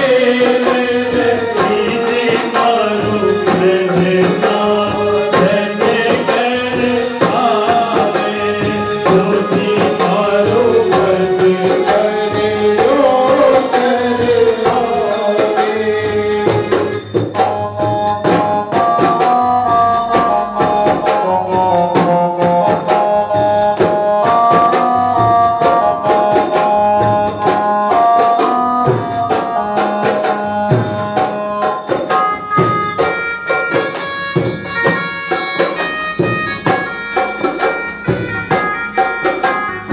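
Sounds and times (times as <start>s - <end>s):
folk song music: 0.0s - 39.9s
held melodic instrument notes: 0.0s - 39.9s
steady percussion beat: 0.0s - 39.9s
wavering melody line: 16.2s - 39.9s.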